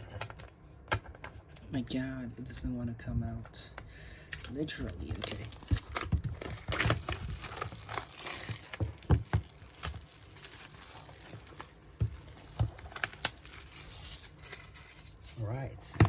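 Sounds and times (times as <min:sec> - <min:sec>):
packaging scraping and rustling: 0:04.7 - 0:15.6
knocks and taps on packaging: 0:08.3 - 0:10.0, 0:11.9 - 0:13.0.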